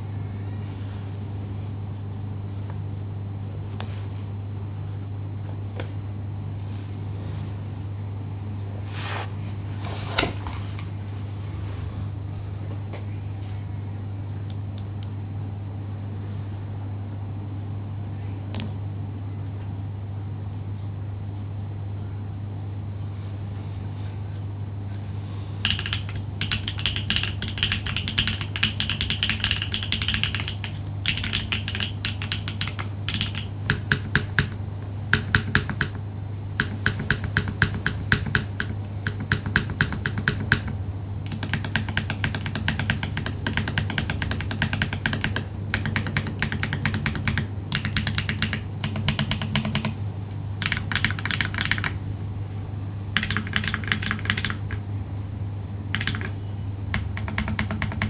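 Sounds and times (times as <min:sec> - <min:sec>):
steady low hum: 0:00.0 - 0:58.0
mechanical keyboard typing: 0:25.6 - 0:36.0, 0:36.6 - 0:50.0, 0:50.6 - 0:52.0, 0:53.2 - 0:54.8, 0:55.9 - 0:58.0.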